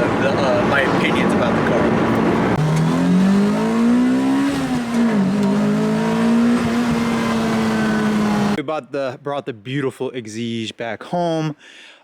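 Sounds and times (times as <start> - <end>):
car engine accelerating: 0.0 - 8.6.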